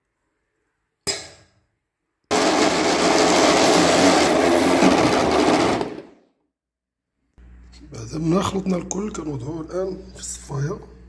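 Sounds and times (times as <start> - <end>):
electric blender running: 2.3 - 6.2.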